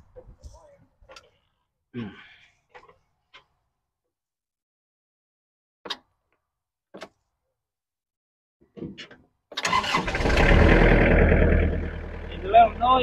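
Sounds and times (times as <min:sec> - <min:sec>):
ride-on mower engine starting: 0:09.6 - 0:13.0.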